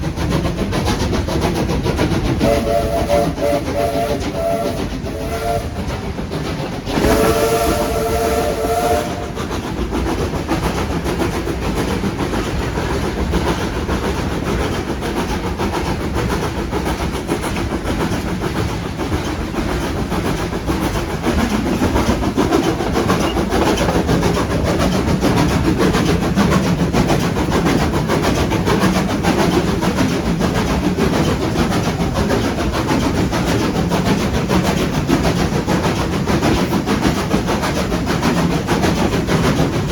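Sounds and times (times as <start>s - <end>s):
train wheels clattering on rails: 0.0s - 39.9s
steam locomotive whistle: 2.4s - 5.9s, 7.0s - 9.4s.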